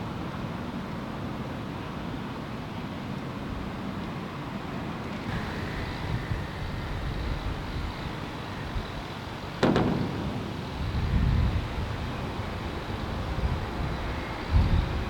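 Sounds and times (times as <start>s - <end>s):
diesel train rumbling: 5.3s - 15.0s.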